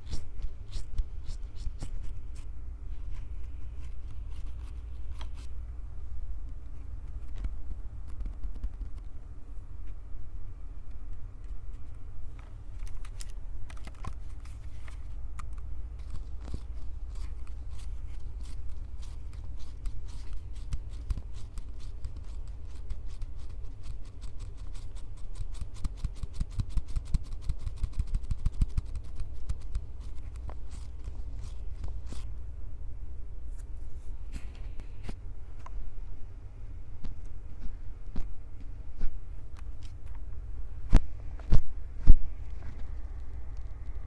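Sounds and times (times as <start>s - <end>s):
crackling and tapping: 6.4s - 9.2s.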